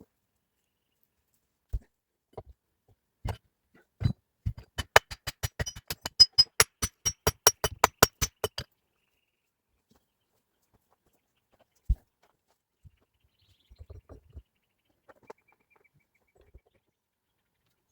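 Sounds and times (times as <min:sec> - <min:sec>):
sharp knocks with metallic ring: 0:04.6 - 0:08.6.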